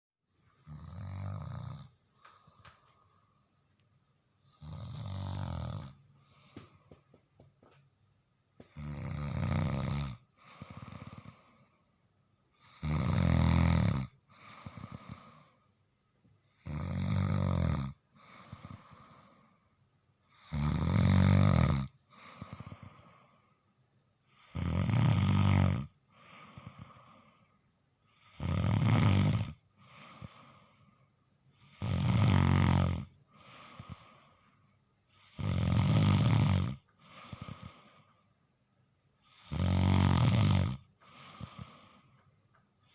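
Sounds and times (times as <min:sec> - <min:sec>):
quiet breath: 0:00.3 - 0:12.9, 0:14.0 - 0:16.7, 0:17.9 - 0:20.7, 0:21.8 - 0:24.6, 0:25.3 - 0:28.4, 0:29.3 - 0:31.8, 0:33.0 - 0:35.4, 0:36.6 - 0:39.6, 0:40.6 - 0:42.9
person snoring through nose: 0:00.6 - 0:02.6, 0:04.5 - 0:06.5, 0:08.7 - 0:11.7, 0:12.6 - 0:15.6, 0:16.6 - 0:19.5, 0:20.3 - 0:23.4, 0:24.3 - 0:27.4, 0:28.2 - 0:30.8, 0:31.6 - 0:34.4, 0:35.2 - 0:38.1, 0:39.3 - 0:42.1.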